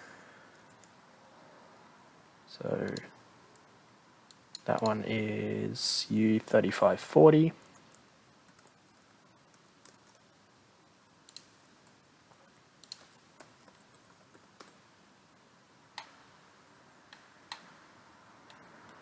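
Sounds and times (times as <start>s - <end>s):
computer mouse and keyboard clicks: 7.7s - 10.3s, 11.3s - 14.8s.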